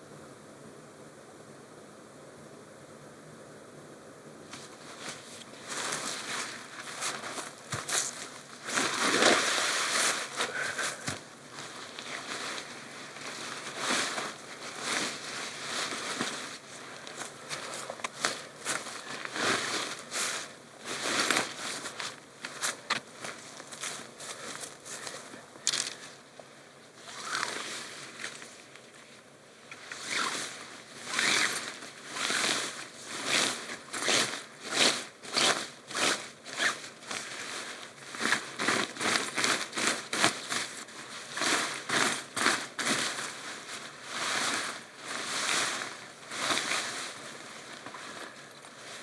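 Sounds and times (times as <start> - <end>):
footsteps crunching: 4.5 - 26.1.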